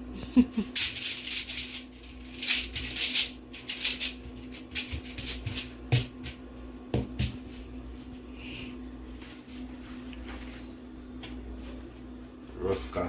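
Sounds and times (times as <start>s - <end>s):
steady low hum: 0.0s - 13.0s
rustling and crinkling: 0.8s - 6.3s.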